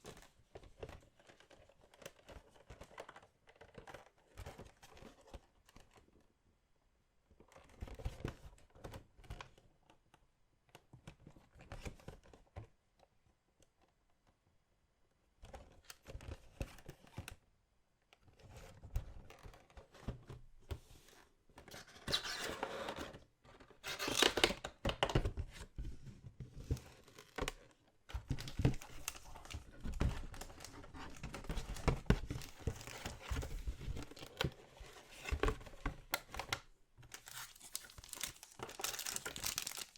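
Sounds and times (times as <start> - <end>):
packaging torn and crinkled: 23.8 - 24.6, 37.1 - 39.9.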